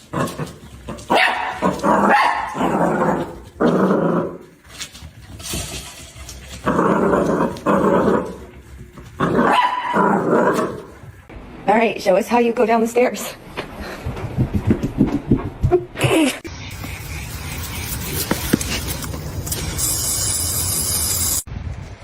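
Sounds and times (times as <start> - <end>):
dog barking and growling: 0.0 - 4.6, 6.5 - 11.2.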